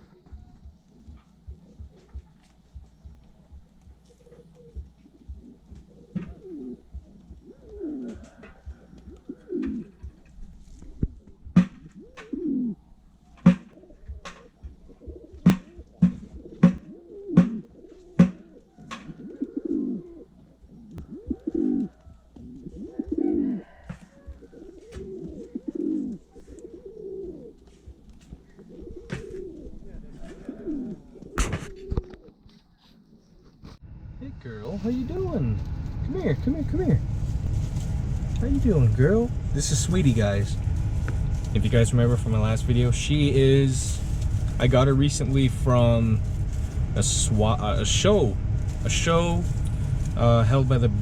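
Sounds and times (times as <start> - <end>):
pigeon cooing: 0.0 - 33.8.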